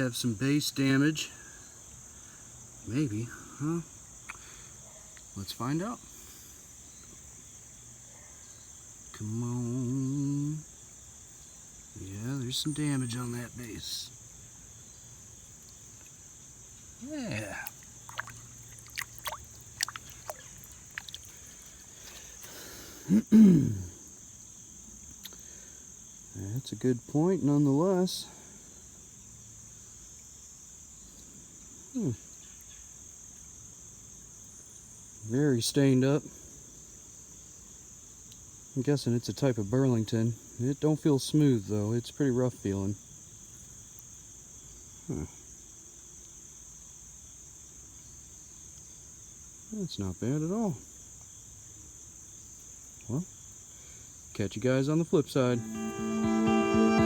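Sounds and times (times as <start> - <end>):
insects chirring: 0.0 - 57.0
man grunting: 17.0 - 17.8, 23.1 - 23.9.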